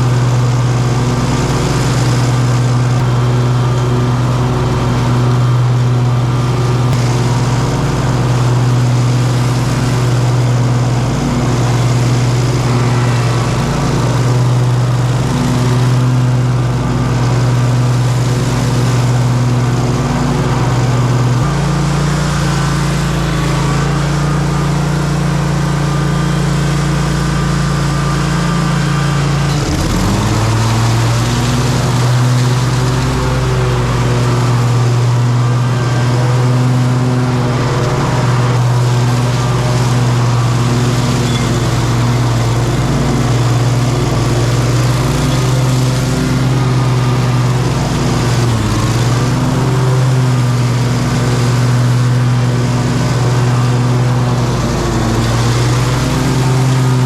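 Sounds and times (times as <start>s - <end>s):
engine running with low hum: 0.0s - 57.0s.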